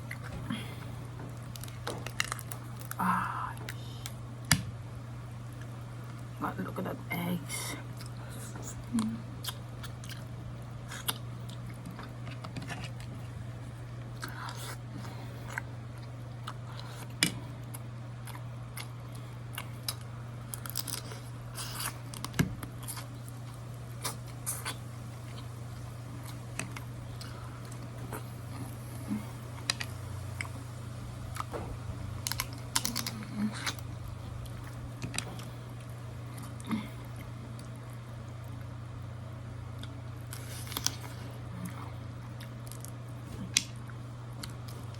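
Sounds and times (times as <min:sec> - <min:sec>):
shell cracking: 0:01.4 - 0:03.0
chewing: 0:07.8 - 0:30.6.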